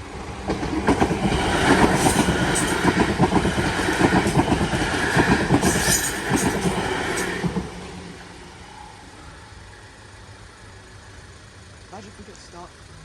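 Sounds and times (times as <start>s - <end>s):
train wheels clattering over joints: 0.4s - 7.8s
train hiss: 1.0s - 10.2s.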